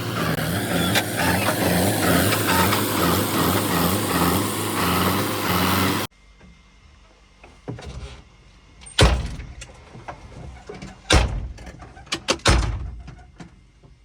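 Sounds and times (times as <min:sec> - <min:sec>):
heavy diesel engine pulsing: 0:00.0 - 0:06.1.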